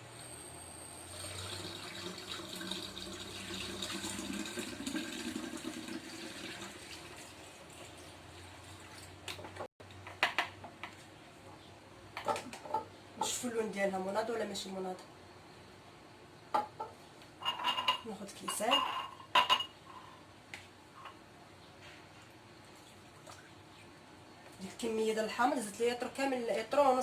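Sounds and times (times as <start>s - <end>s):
liquid pouring into a bottle: 1.1s - 7.8s.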